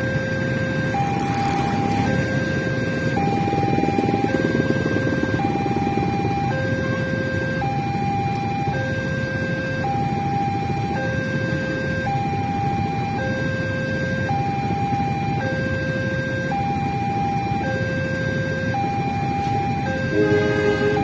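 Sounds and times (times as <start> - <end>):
two-tone level crossing alarm: 0.0 - 21.0
multi-tone pitched sound: 20.1 - 21.0.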